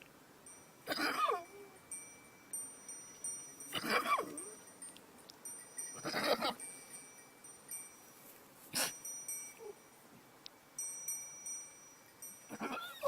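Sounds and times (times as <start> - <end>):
faint high ringing tones: 0.0 - 13.0
animal call with wavering pitch: 12.5 - 13.0.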